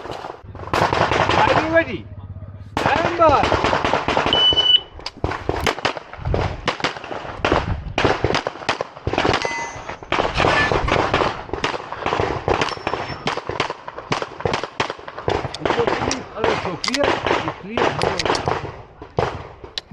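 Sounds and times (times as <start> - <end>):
electronic timer beep: 4.3 - 4.9
handgun shots: 12.5 - 18.6.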